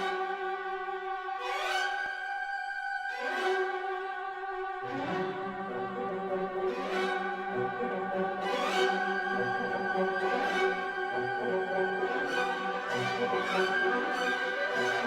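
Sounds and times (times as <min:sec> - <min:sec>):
bowed string music: 0:03.1 - 0:15.0.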